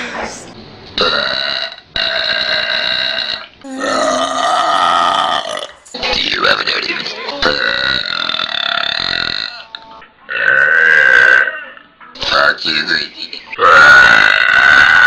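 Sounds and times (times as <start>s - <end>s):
person burping: 1.0s - 5.9s, 7.3s - 9.6s, 10.3s - 11.8s, 13.6s - 15.0s.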